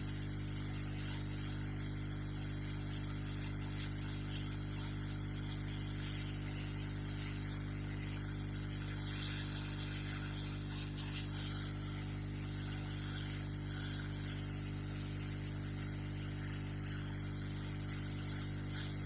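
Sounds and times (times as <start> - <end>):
low electrical hum: 0.0 - 19.0
hot air blower hissing: 8.0 - 14.8.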